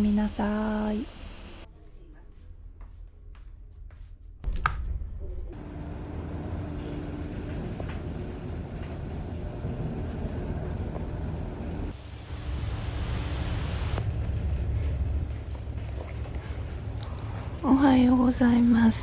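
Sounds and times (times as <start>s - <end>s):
ship engine rumble: 5.6s - 19.0s.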